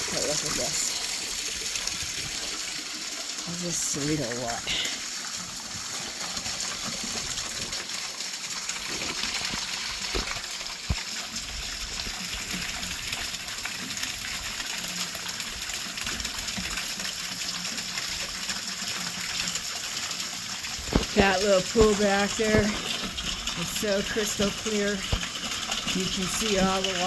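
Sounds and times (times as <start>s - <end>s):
small waterfall splashing: 0.0s - 27.0s.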